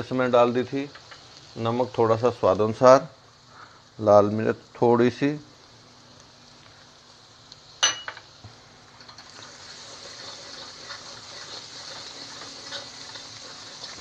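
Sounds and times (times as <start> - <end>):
masala frying in a pan: 0.0 - 14.0
faint stirring ticks: 0.8 - 1.6
metallic clink: 7.8 - 8.2.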